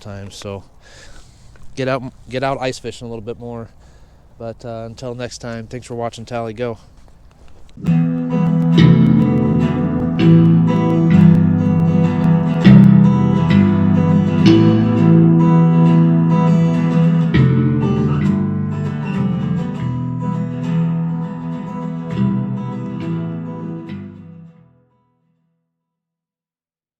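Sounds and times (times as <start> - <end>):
strummed acoustic guitar chords: 7.8 - 24.7.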